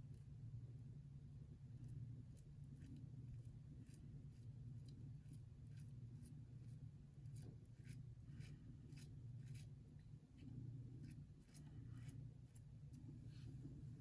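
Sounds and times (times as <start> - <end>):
low steady hum: 0.0 - 14.0
razor scraping stubble: 2.8 - 13.0.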